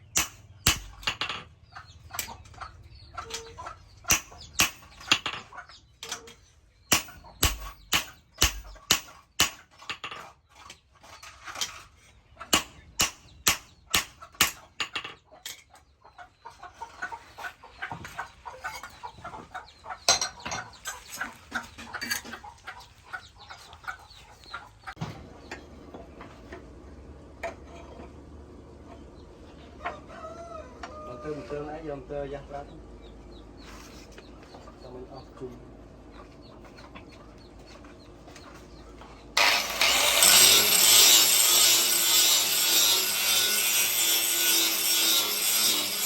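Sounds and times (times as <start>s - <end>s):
hammer striking steel: 0.1s - 1.4s, 4.1s - 5.3s, 6.9s - 9.6s, 12.5s - 14.7s.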